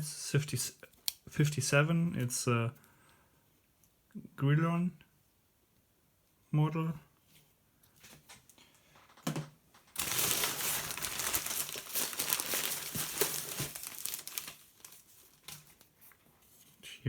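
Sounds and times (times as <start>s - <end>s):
packing material crinkling: 9.8s - 16.1s.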